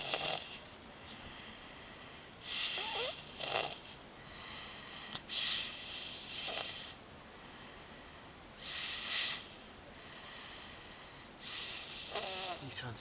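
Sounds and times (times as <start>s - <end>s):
loud rasping snores: 0.0s - 0.6s, 2.5s - 4.0s, 5.4s - 7.0s, 11.5s - 12.7s
quiet breathing: 0.0s - 3.1s, 3.8s - 13.0s.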